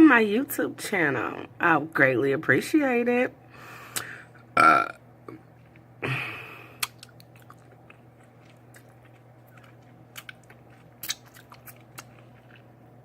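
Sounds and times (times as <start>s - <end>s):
burp: 4.6s - 5.0s
chewing with wet mouth clicks: 6.8s - 12.7s.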